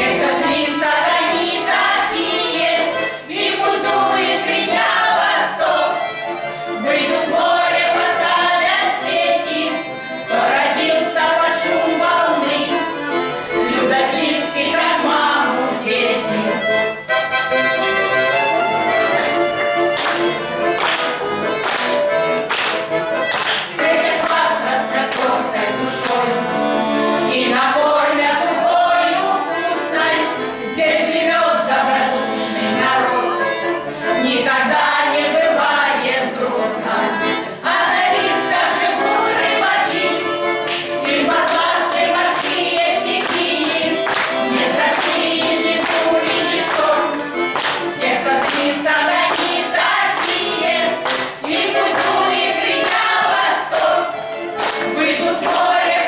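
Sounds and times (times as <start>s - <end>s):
women singing in chorus: 0.0s - 6.1s, 6.8s - 16.7s, 23.7s - 56.0s
instrumental accompaniment with beat: 16.6s - 27.7s, 37.2s - 55.9s.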